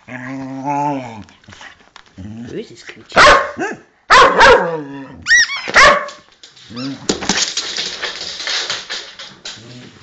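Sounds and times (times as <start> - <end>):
dog barking: 3.2 - 4.8, 5.8 - 6.2.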